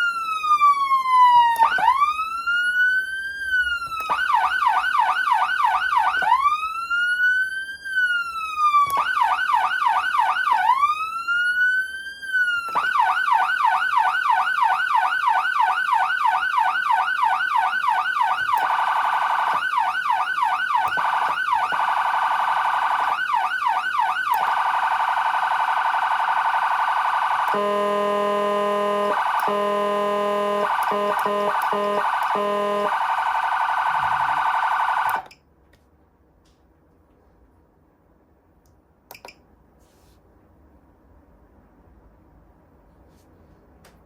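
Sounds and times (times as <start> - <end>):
electronic siren warbling: 0.0 - 2.8, 3.6 - 35.4
buzzing air horn tone: 27.5 - 33.0.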